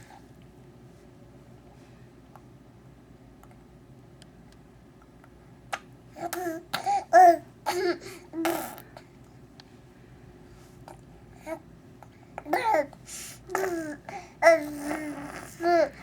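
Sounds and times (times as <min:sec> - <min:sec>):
baby babbling: 0:12.4 - 0:16.0.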